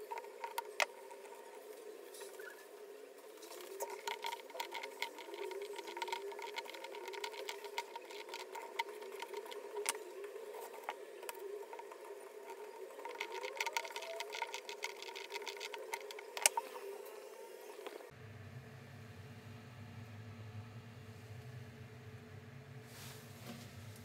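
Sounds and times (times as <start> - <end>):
small motorised tool humming: 3.4 - 18.1
rapid clicks rattling: 3.8 - 10.0, 11.7 - 16.6.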